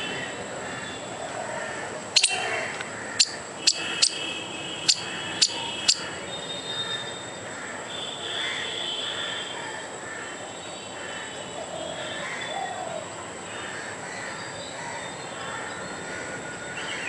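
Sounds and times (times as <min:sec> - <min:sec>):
squirrel alarm chirps: 0:02.2 - 0:06.2.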